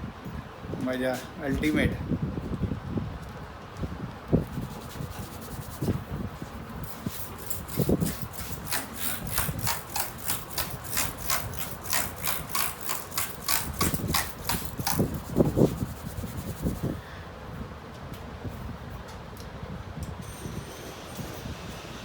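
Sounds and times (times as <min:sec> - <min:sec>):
hands rubbing scalp and hair: 0:04.4 - 0:06.1, 0:06.9 - 0:17.0.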